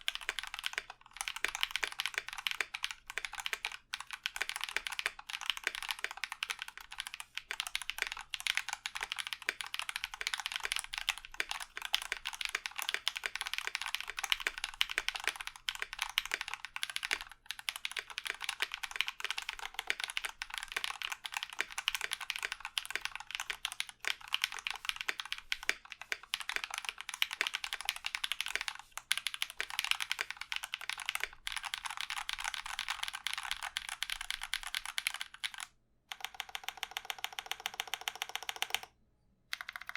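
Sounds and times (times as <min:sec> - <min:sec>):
mechanical keyboard typing: 0:00.0 - 0:38.9, 0:39.5 - 0:39.9.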